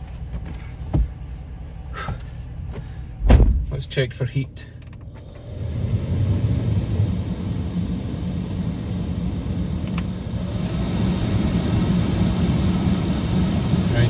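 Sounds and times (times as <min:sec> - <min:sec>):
cabin heater blowing: 0:04.6 - 0:14.0.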